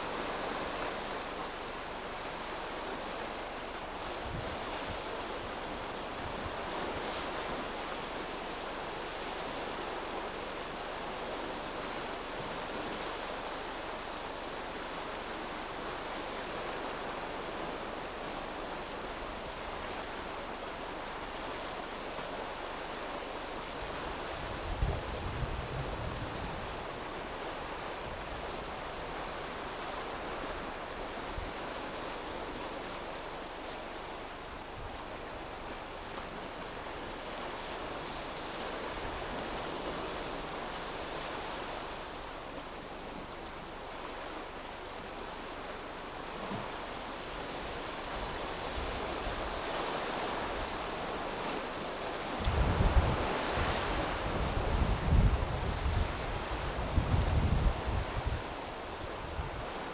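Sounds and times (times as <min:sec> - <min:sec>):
waves surging and breaking: 0:00.0 - 0:59.9
strong wind: 0:23.8 - 0:27.3, 0:52.4 - 0:59.9.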